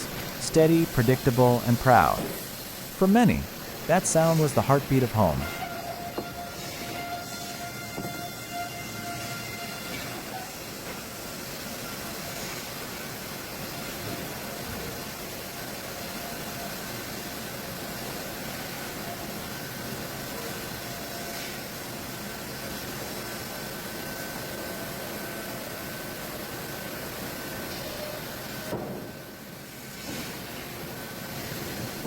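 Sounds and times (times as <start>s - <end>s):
sawmill machinery din: 0.0s - 9.9s.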